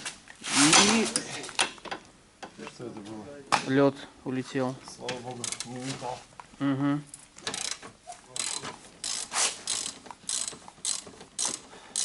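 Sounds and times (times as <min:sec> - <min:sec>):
ratchet wrench strokes: 0:07.5 - 0:07.8, 0:08.4 - 0:12.0.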